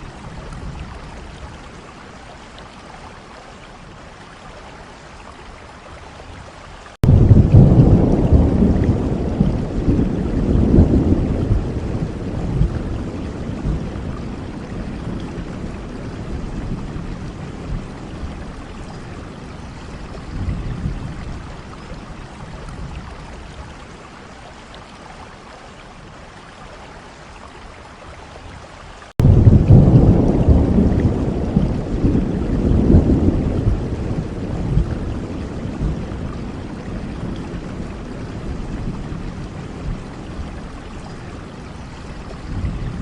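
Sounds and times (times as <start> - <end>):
steady rain: 0.0 - 43.0
rolling thunder: 7.0 - 19.0, 29.2 - 40.8, 42.3 - 43.0.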